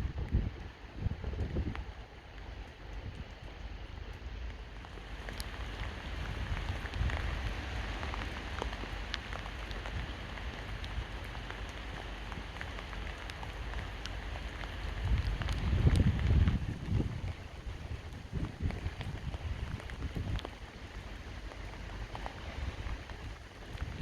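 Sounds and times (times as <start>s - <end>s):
steady rain hiss: 0.0s - 24.0s.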